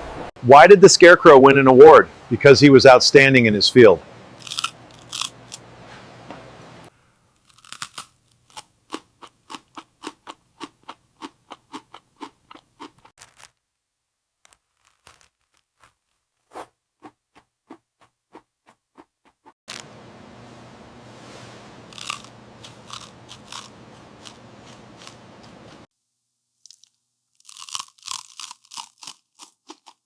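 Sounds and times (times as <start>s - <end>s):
crunchy food chewing: 4.4s - 5.6s, 7.4s - 13.5s, 21.9s - 25.5s, 26.6s - 30.0s.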